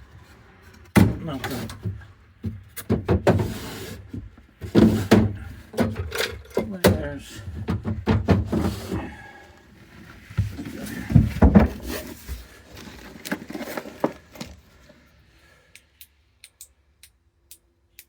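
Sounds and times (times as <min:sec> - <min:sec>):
wooden lockers knocking and thumping: 0:00.8 - 0:09.4, 0:10.4 - 0:14.6.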